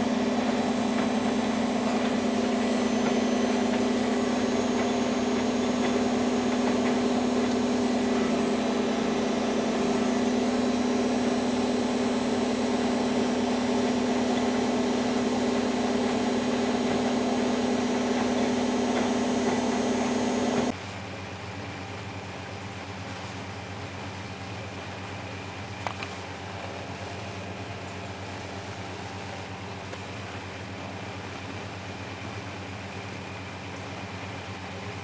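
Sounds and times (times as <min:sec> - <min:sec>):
quiet steady whir: 0:00.0 - 0:20.8
washing machine motor hum: 0:00.0 - 0:20.8.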